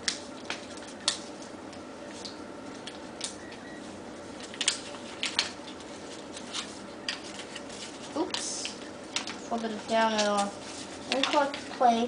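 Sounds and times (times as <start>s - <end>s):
paper being folded and creased: 4.4s - 12.0s.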